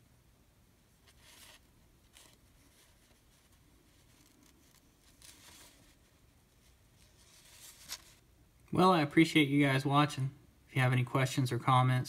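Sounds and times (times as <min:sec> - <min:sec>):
faint rustles: 0:00.9 - 0:08.2.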